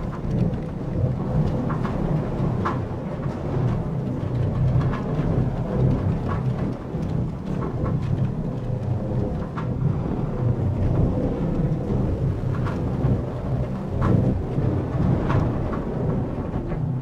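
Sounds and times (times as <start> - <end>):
low rumbling machine drone: 0.0 - 17.0
faint steady hum: 9.0 - 16.7.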